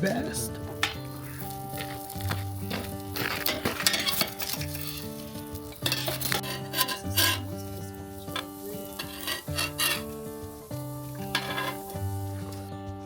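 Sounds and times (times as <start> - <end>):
light sizzling: 0.0 - 13.0
soft background music: 0.0 - 13.0
utensil scraping cookware: 0.8 - 12.6.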